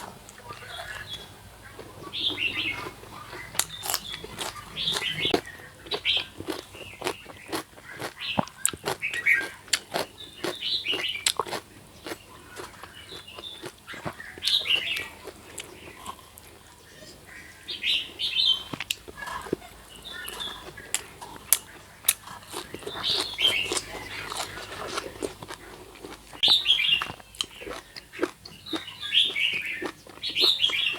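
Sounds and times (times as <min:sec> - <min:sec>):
crunching chewing: 0:00.0 - 0:30.9
bird chirps: 0:00.5 - 0:11.4, 0:16.8 - 0:24.8, 0:26.4 - 0:30.9.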